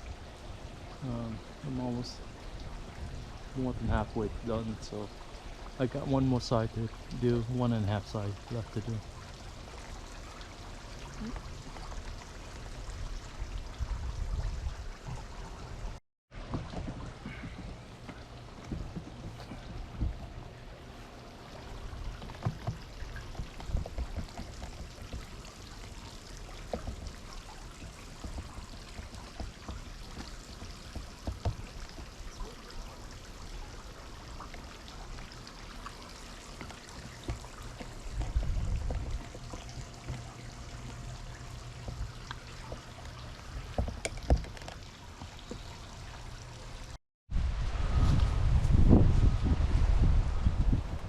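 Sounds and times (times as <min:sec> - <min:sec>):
wind buffeting microphone: 0:12.8 - 0:16.0, 0:37.9 - 0:40.0, 0:47.3 - 0:51.0.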